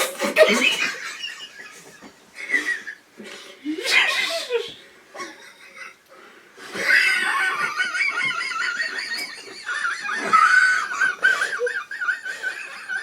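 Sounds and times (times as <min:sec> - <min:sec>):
high-pitched laughter: 0:06.8 - 0:13.0.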